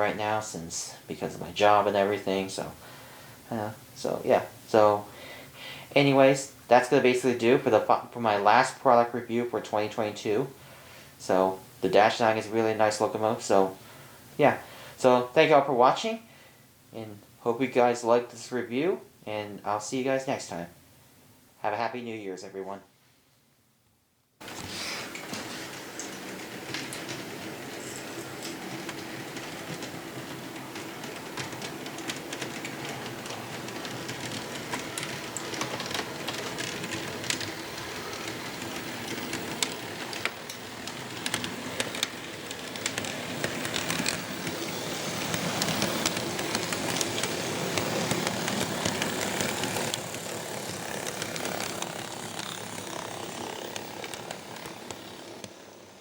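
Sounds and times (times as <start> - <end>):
model train rattling on track: 24.4 - 56.0
small clicks: 24.5 - 55.6.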